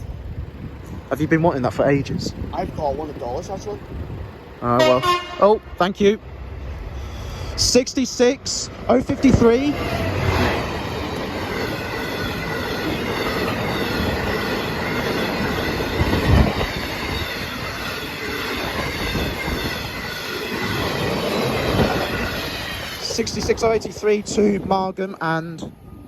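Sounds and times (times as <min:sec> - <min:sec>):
freight train wheels knocking: 0:08.4 - 0:24.4.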